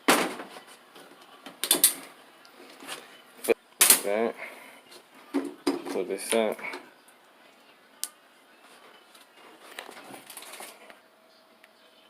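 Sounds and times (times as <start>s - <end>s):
man's voice: 5.8s - 6.9s.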